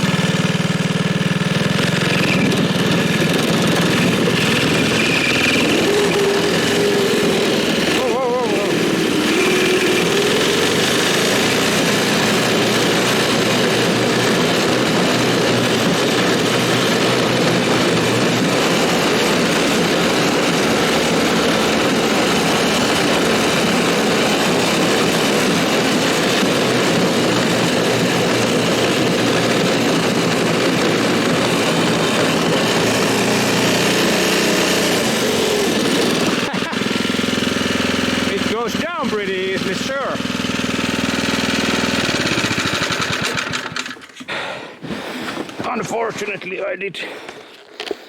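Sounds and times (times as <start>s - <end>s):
snowmobile engine running: 0.0s - 47.4s.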